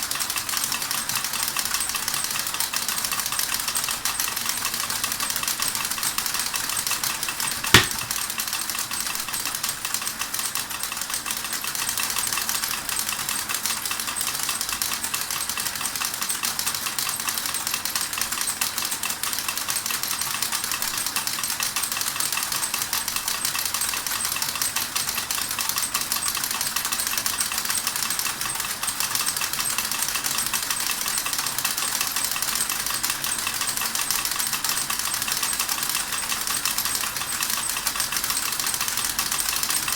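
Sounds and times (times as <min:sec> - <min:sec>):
sharp click: 0:07.4 - 0:08.2.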